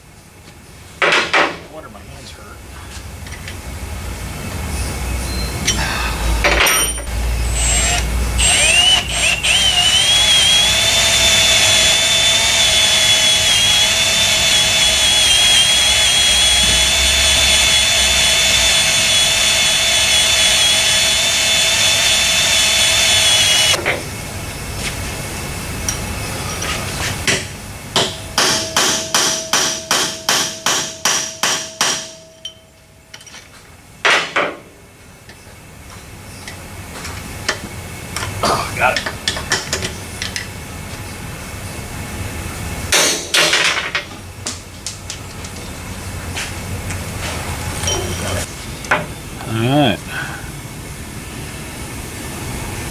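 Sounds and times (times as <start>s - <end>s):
electric drill running under load: 7.1s - 23.8s.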